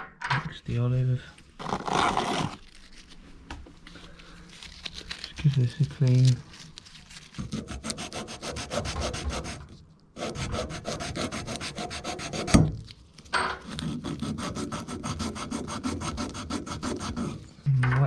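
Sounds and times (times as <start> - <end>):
pipe rubbed clean by hand: 13.7 - 17.7.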